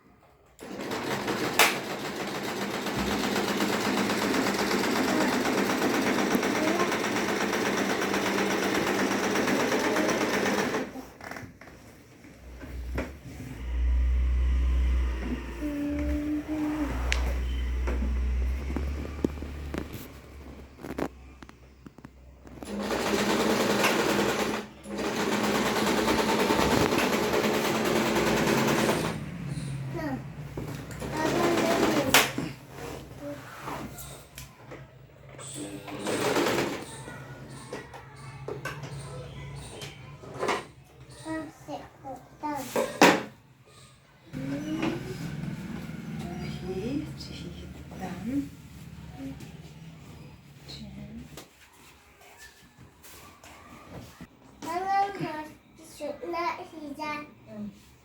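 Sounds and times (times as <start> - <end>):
electric sewing machine running: 0.6 - 11.0, 13.5 - 20.1, 22.6 - 29.9, 30.8 - 32.4, 35.6 - 36.9, 44.4 - 49.2.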